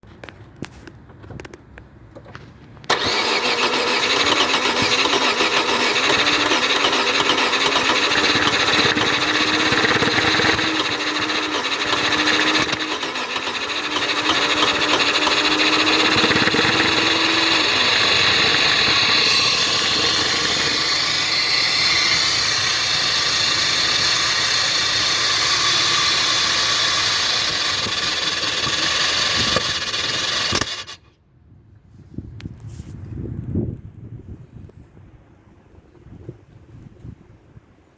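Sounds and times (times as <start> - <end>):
car engine running: 2.9 - 31.0
steady whine: 2.9 - 31.1.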